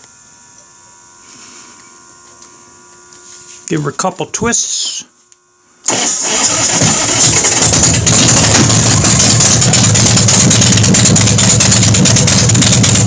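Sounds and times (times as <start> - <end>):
motorcycle engine starting: 5.9 - 13.0.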